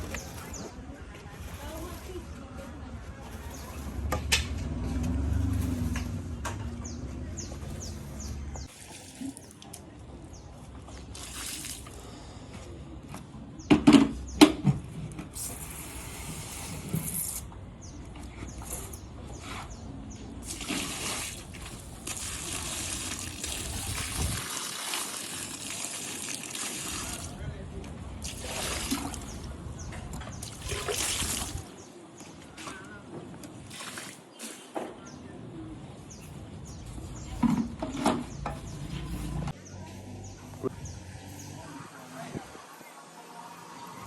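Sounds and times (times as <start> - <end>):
water running and splashing: 20.4 - 27.4, 28.2 - 29.5, 30.4 - 31.7.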